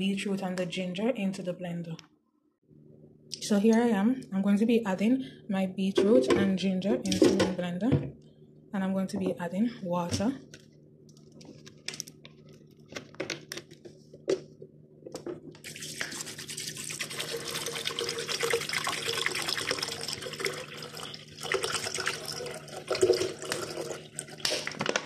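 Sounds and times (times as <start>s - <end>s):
water pouring into blender jar: 15.6s - 24.8s.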